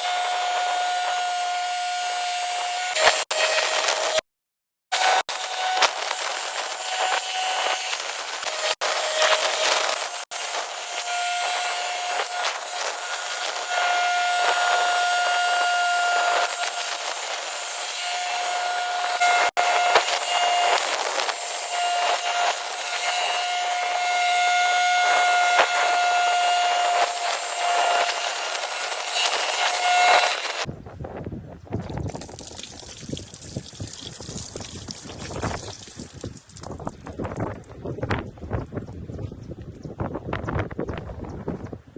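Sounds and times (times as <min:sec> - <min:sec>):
band saw cutting log: 0:00.0 - 0:04.2, 0:04.9 - 0:30.7.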